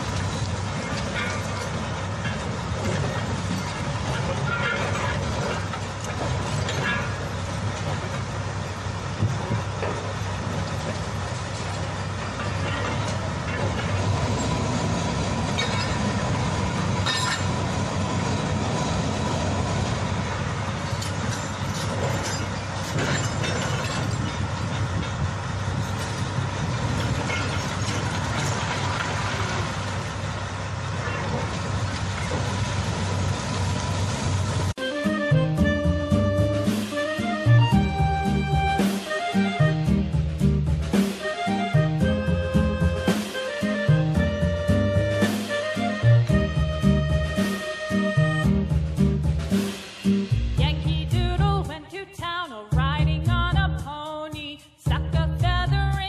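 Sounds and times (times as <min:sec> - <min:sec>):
clanks and scrapes: 0:00.0 - 0:08.2, 0:11.6 - 0:17.9, 0:20.9 - 0:29.9
excavator diesel engine running: 0:00.0 - 0:51.7.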